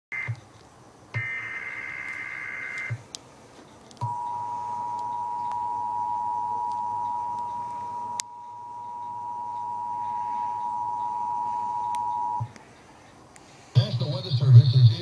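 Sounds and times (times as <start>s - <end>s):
two-tone attention signal: 4.0s - 12.5s.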